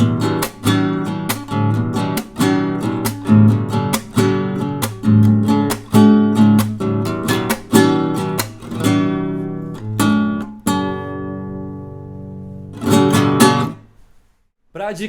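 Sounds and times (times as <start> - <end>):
classical guitar strumming: 0.0 - 14.1.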